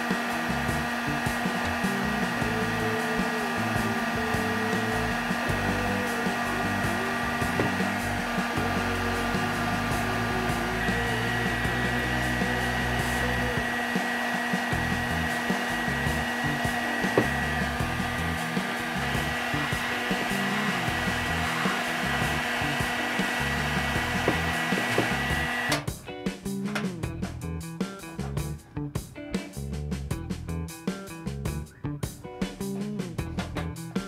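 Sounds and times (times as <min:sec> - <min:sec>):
heat gun fan rushing: 0:00.0 - 0:25.9.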